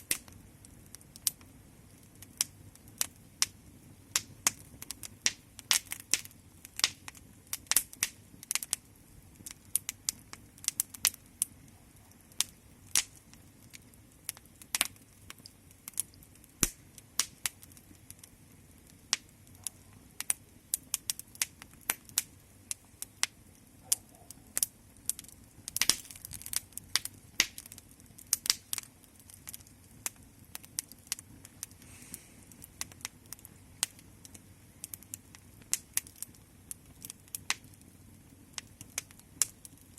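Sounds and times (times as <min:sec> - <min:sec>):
wood fire crackling: 0:00.0 - 0:39.9.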